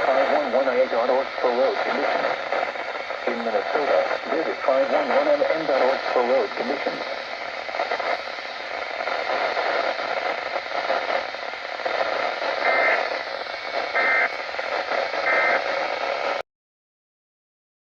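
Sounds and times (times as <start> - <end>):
radio hiss and static: 0.0 - 16.4
two-tone digital data bursts: 13.8 - 14.4.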